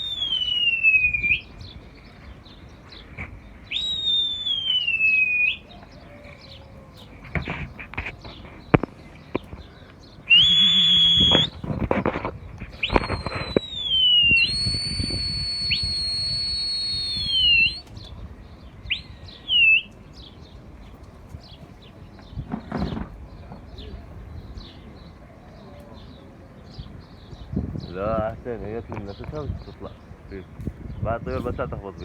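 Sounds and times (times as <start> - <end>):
person whistling shrill notes: 0.0 - 1.4, 3.7 - 5.6, 10.3 - 11.6, 12.8 - 17.9.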